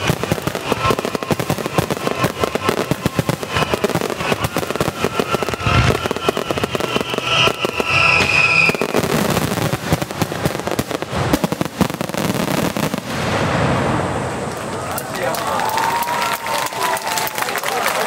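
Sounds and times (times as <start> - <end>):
fireworks bangs and crackling: 0.0 - 17.2.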